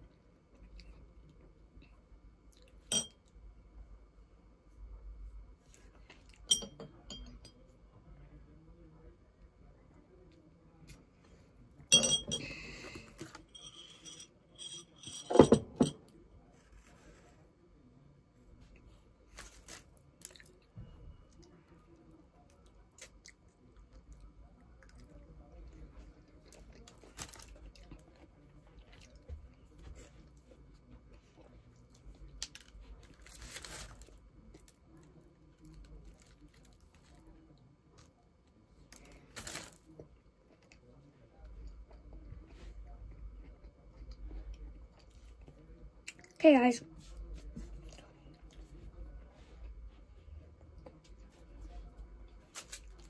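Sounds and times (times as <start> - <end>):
tableware clinking: 2.9 - 3.3, 6.4 - 7.6, 11.9 - 16.1
food crunching while chewed: 19.3 - 20.7, 22.4 - 25.2.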